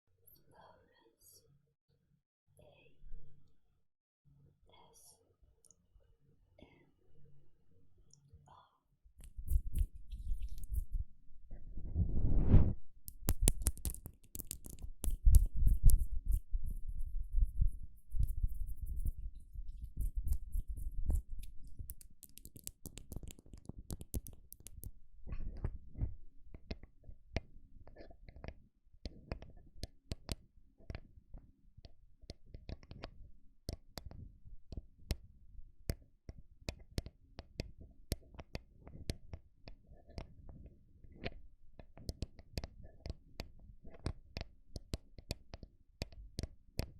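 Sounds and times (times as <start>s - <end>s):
tapping on microphone: 12.5s - 26.1s.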